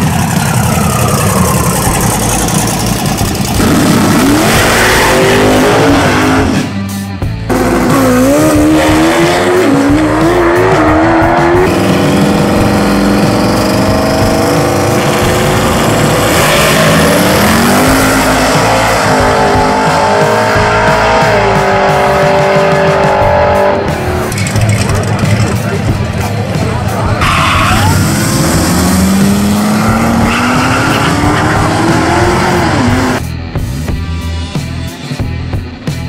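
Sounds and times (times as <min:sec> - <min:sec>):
race car engines revving: 0:00.0 - 0:33.3
tire squeal: 0:27.2 - 0:33.2.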